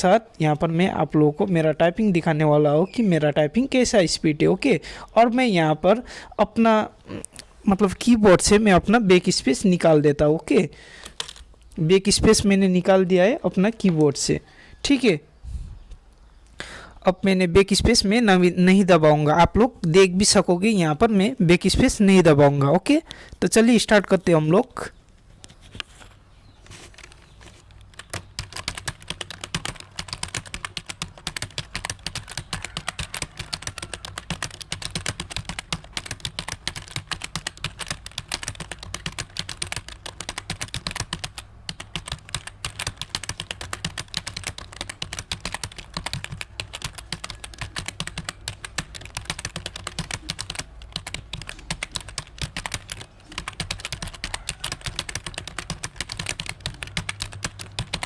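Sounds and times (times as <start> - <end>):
typing on computer keyboard: 11.0 - 11.5, 27.0 - 58.0.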